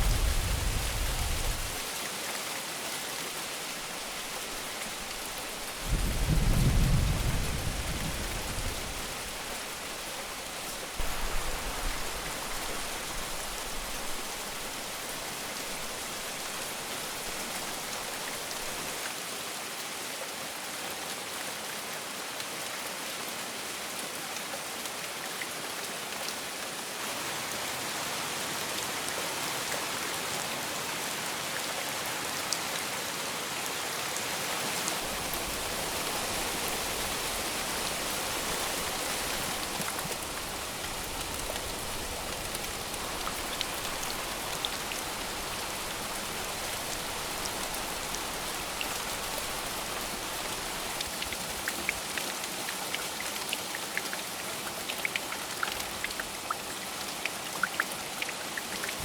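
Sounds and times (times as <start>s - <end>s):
heavy rain falling: 0.0s - 19.2s, 33.4s - 57.8s.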